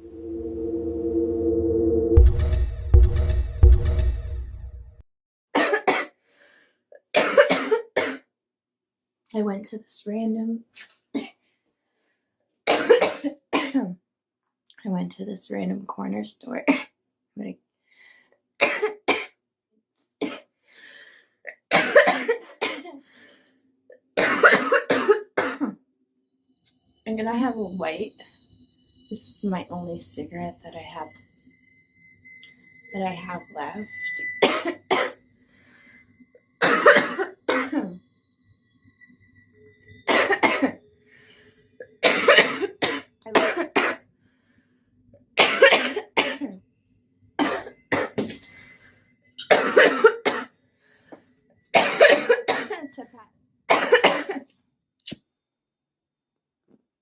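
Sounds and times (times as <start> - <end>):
person coughing: 5.6 - 6.2, 7.0 - 8.2, 12.7 - 14.0, 21.5 - 23.0, 24.2 - 25.8, 34.4 - 35.2, 36.6 - 38.0, 40.1 - 40.8, 42.0 - 44.0, 47.4 - 48.4, 49.4 - 50.5, 51.8 - 53.0, 53.7 - 54.4.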